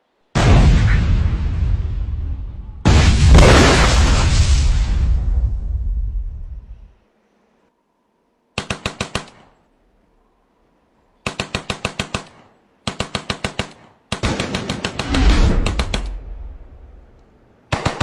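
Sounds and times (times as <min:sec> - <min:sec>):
low explosion rumble: 0:00.4 - 0:07.0, 0:15.0 - 0:17.2
automatic rifle fire: 0:11.3 - 0:16.2, 0:17.7 - 0:18.0.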